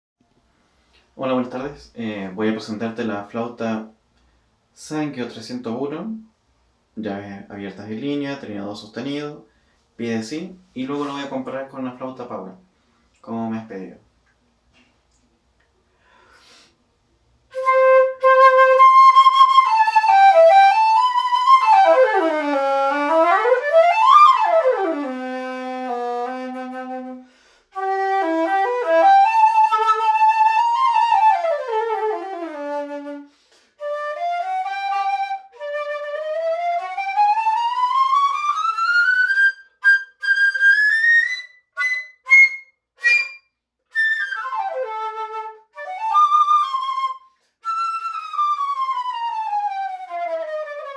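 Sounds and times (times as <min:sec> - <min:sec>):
solo flute playing: 0:17.5 - 0:50.9.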